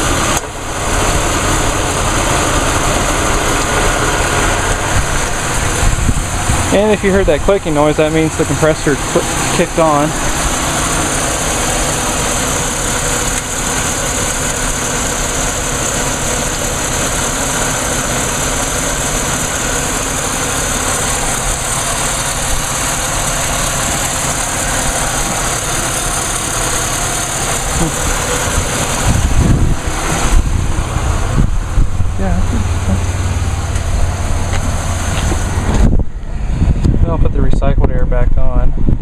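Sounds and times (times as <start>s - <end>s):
low thumps: 0.0s - 13.6s, 27.2s - 37.6s
car engine idling: 0.0s - 38.6s.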